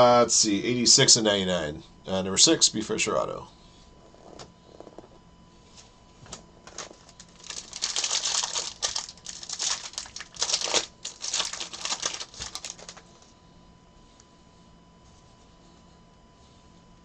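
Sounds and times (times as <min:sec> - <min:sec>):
foil wrapper crinkling: 0:06.7 - 0:13.2.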